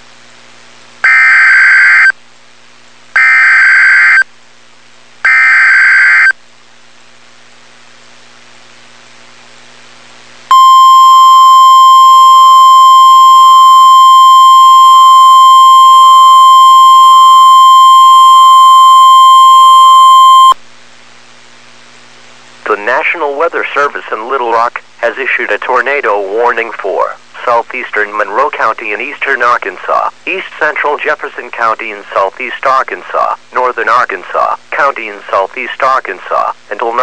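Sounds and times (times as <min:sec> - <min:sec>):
steady alarm tone: 0:10.5 - 0:20.6.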